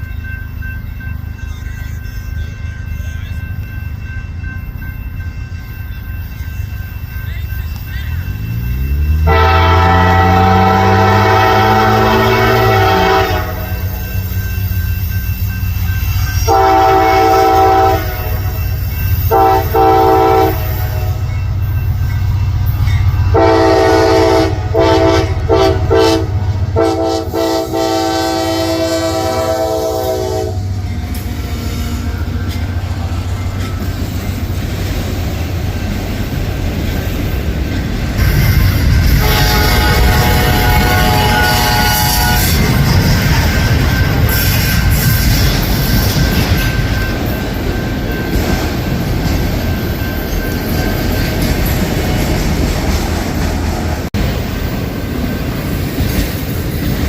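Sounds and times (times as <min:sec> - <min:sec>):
diesel locomotives rumbling: 0:00.0 - 0:57.0
locomotive air horn blasts: 0:09.2 - 0:14.0, 0:16.4 - 0:18.6, 0:19.3 - 0:21.2, 0:23.3 - 0:32.4, 0:39.0 - 0:42.8
train wheel clatter: 0:29.4 - 0:57.0.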